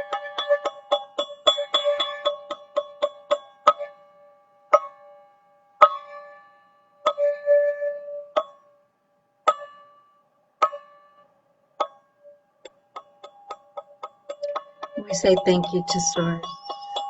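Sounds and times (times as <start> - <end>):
bell-like tube strikes: 14.4 - 17.0.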